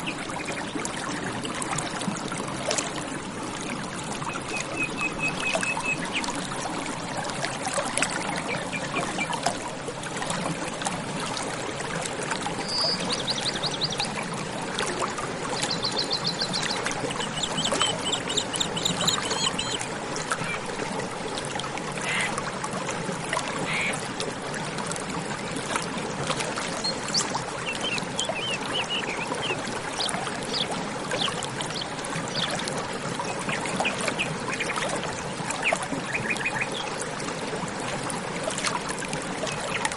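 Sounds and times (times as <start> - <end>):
water trickling and splashing: 0.0 - 39.9
small birds chirping: 15.6 - 19.8.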